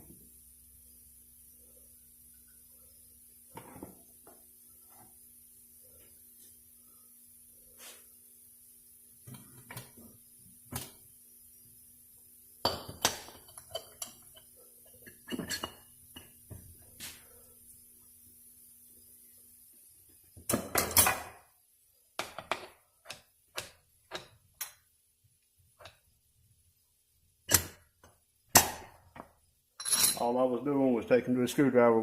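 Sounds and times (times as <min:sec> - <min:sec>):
screwdriver clinking on metal: 0:29.8 - 0:30.3.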